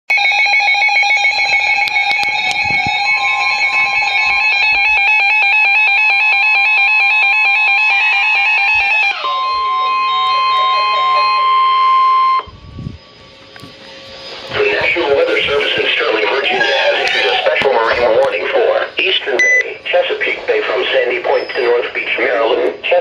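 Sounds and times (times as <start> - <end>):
steady warning alarm tone: 0.1 - 23.0
two-tone warbling data bursts: 8.0 - 12.5, 13.1 - 23.0.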